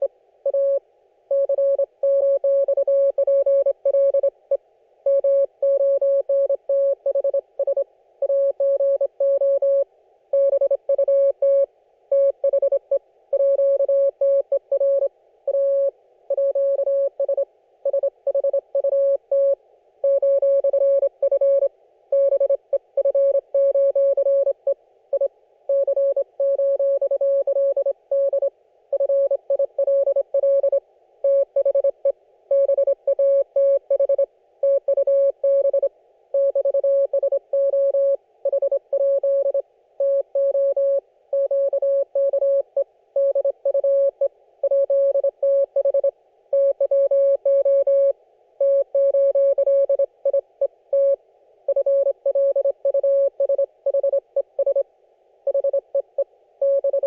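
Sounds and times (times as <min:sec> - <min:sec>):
morse code beeps: 0:56.6 - 0:57.0.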